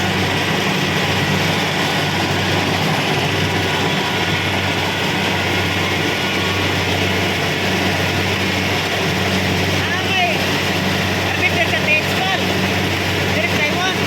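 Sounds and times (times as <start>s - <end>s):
combine harvester engine drone: 0.0s - 14.0s.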